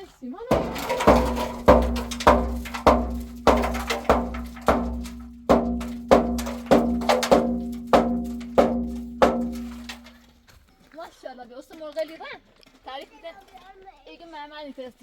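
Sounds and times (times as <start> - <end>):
percussion beat: 0.5 - 10.2.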